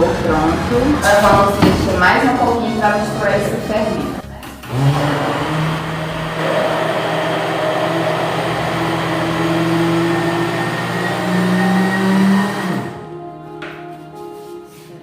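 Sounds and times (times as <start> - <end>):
blender running: 4.6 - 13.0.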